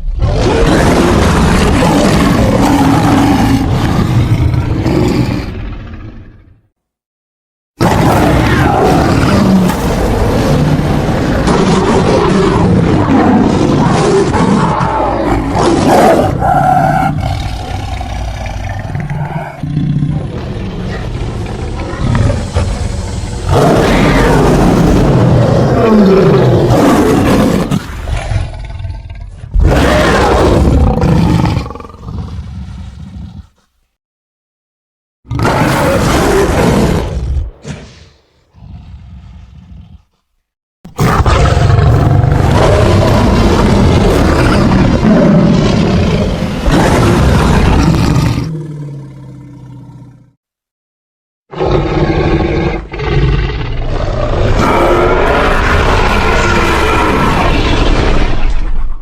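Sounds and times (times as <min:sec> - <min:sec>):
creature roaring: 0:00.0 - 0:06.5, 0:07.8 - 0:33.6, 0:35.3 - 0:40.2, 0:40.9 - 0:50.4, 0:51.5 - 0:59.0
high held creature cry: 0:00.2 - 0:05.2, 0:07.8 - 0:28.3, 0:29.5 - 0:32.4, 0:40.9 - 0:48.9, 0:51.5 - 0:58.3
rasping creature sound: 0:07.8 - 0:33.7, 0:51.5 - 0:58.4.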